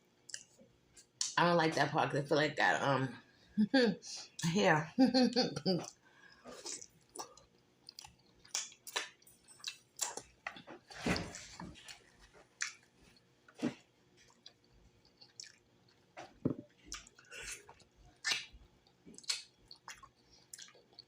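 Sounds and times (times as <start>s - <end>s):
wet chewing and lip-smacking: 0.3s - 1.3s, 5.8s - 10.6s, 11.4s - 21.0s.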